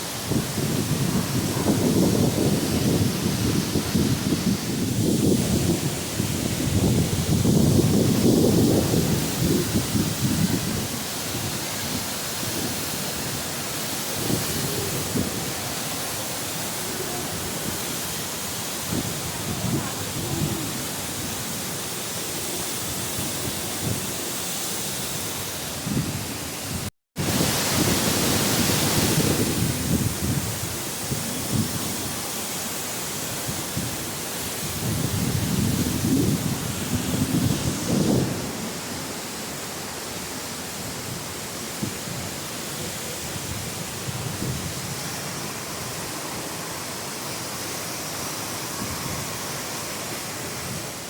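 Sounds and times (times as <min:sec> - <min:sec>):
waterfall rushing: 0:00.0 - 0:51.0
wind buffeting microphone: 0:00.1 - 0:24.2, 0:25.0 - 0:32.3, 0:33.3 - 0:46.2, 0:48.2 - 0:51.0.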